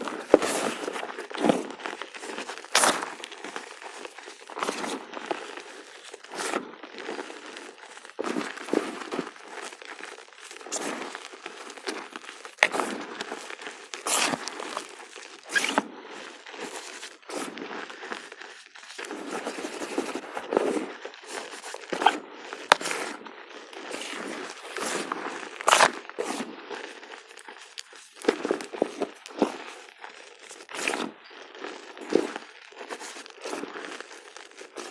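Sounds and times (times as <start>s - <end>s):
chalk crunching by hand: 0.0s - 34.9s
chalk blocks snapping: 25.6s - 26.0s.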